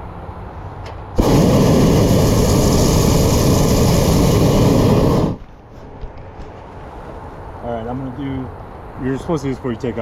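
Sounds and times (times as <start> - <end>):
propane burner blast: 1.1 - 5.7.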